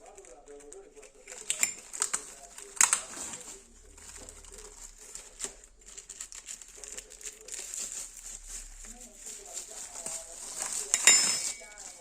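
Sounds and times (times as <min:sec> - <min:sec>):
handling clicks and knocks: 0:00.0 - 0:03.6, 0:10.0 - 0:12.0.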